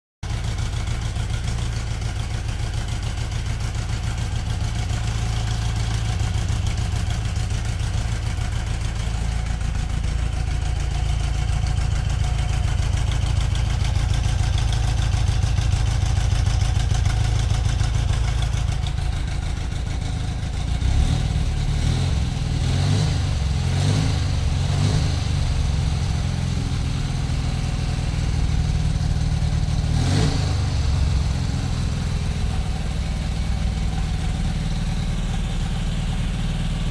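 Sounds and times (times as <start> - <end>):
motorcycle engine idling and revving: 0.2 - 36.9.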